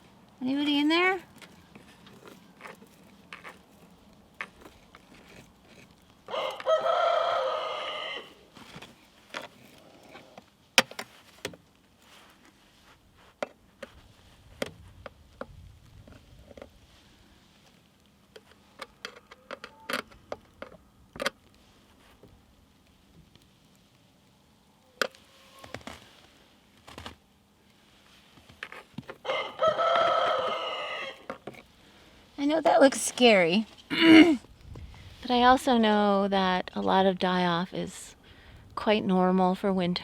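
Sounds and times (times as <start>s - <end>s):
small clicks and scrapes: 0.0s - 24.0s, 24.9s - 31.8s
rooster crowing: 6.3s - 8.5s, 29.2s - 31.3s.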